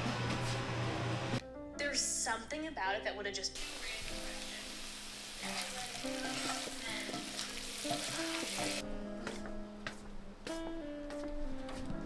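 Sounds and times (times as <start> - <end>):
background music: 1.3 - 12.0
food sizzling in a frying pan: 3.6 - 8.8.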